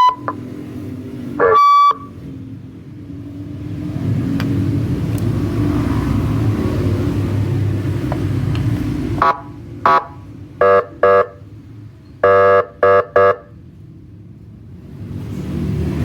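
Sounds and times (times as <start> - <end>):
electronic siren horn blasts: 0.0 - 0.4, 1.4 - 2.2, 9.2 - 11.4, 12.2 - 13.5
vehicle engine running: 0.0 - 16.0.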